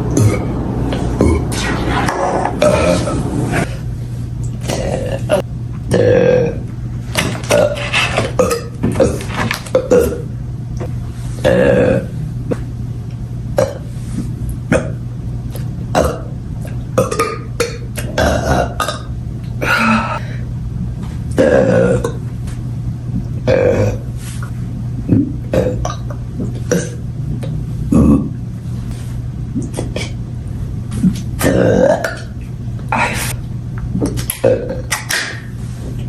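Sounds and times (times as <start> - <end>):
person burping: 0.0 - 3.8, 4.6 - 10.3, 11.4 - 12.7, 13.6 - 13.9, 14.7 - 20.2, 21.4 - 22.2, 23.4 - 24.1, 25.0 - 27.0, 27.9 - 28.4, 29.6 - 30.2, 31.4 - 33.4, 34.1 - 35.0
steady low hum: 0.0 - 36.0.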